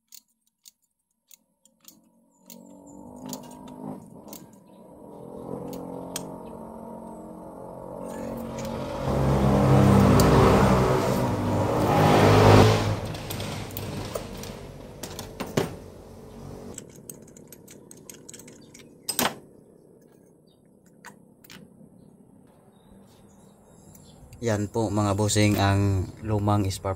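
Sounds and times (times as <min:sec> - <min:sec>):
vehicle engine passing by: 0:02.6 - 0:16.8.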